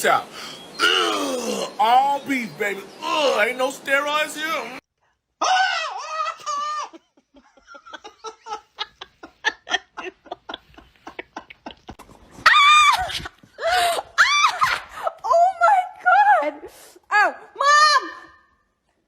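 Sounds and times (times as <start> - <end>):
person laughing: 6.0 - 12.1.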